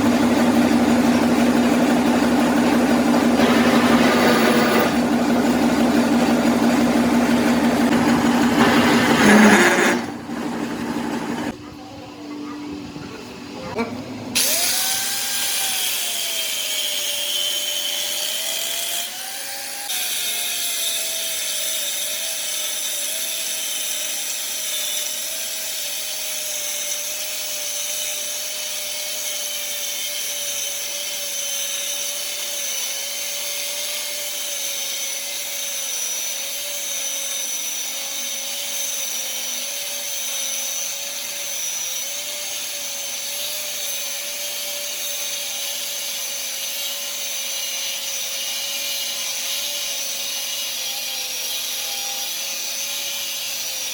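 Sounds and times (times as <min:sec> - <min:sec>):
metalworking machine hum: 0:00.0 - 0:19.3.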